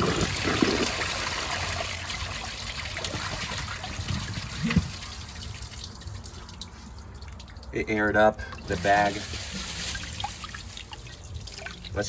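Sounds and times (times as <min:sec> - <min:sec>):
toilet flushing: 0:00.0 - 0:05.8.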